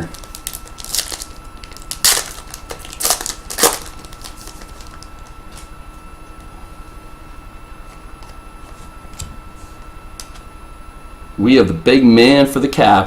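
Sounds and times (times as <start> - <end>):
cards crinkling and rustling: 0.0 - 5.8.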